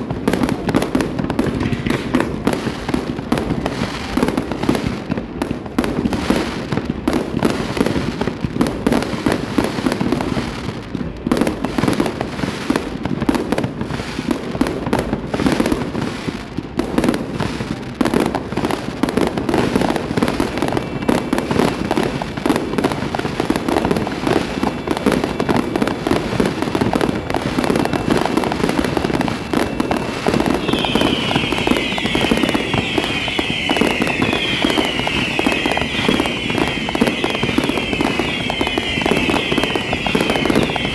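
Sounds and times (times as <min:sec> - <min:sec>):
fireworks bangs and pops: 0:00.0 - 0:40.9
high falling whistles: 0:29.4 - 0:40.9.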